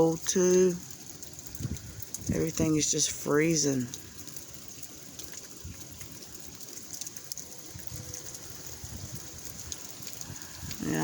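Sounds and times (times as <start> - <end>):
freezing rain hissing: 0.0 - 11.0.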